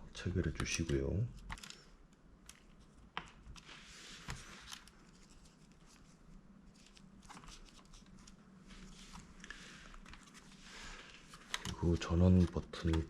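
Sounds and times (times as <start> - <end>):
laptop parts clicking: 0.4 - 5.4, 11.3 - 11.8.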